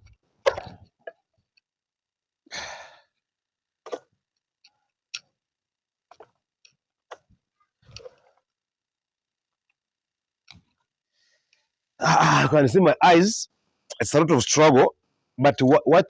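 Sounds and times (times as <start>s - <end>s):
person sighing: 2.5s - 3.1s, 12.0s - 12.6s.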